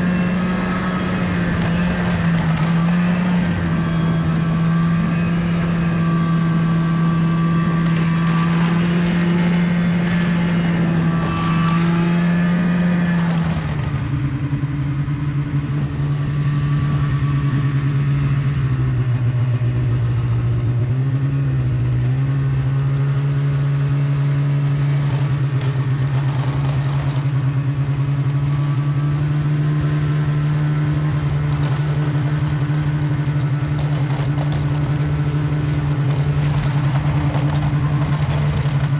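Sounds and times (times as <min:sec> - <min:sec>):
snowmobile engine running: 0:00.0 - 0:38.9.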